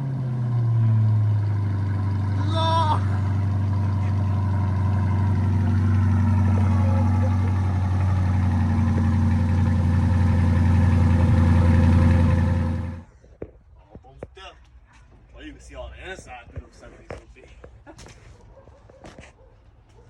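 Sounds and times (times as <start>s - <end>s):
engine idling: 0.0s - 13.1s.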